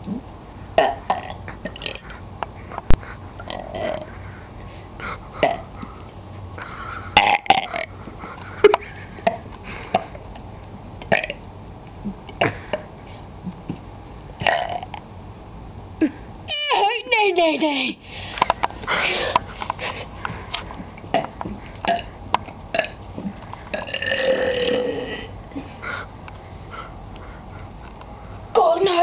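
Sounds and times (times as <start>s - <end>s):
person burping: 0.8s - 2.1s, 3.5s - 4.1s, 5.4s - 5.6s, 7.2s - 7.9s, 12.0s - 12.9s, 14.4s - 14.9s, 21.9s - 22.1s, 23.7s - 25.4s.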